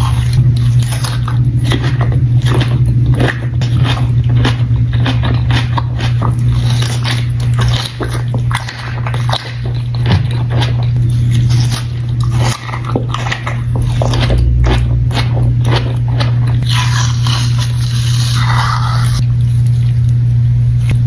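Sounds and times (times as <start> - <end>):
biting and chewing food: 0.0 - 21.0
low hum: 0.0 - 21.0.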